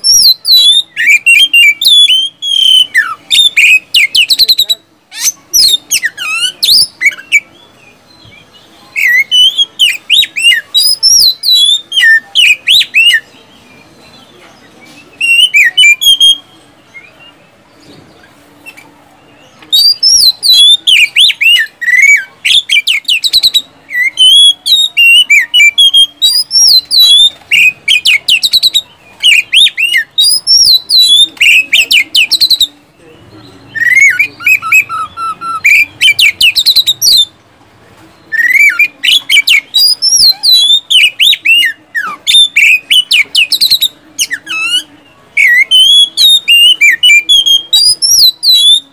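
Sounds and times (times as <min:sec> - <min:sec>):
bird singing sharp whistles: 0:33.7 - 0:37.3.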